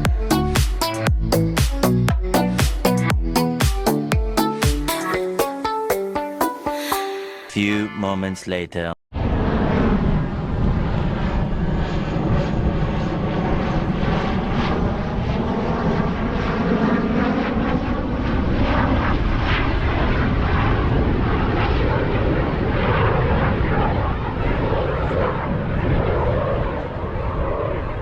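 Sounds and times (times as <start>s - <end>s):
wind buffeting microphone: 19.9s - 28.0s.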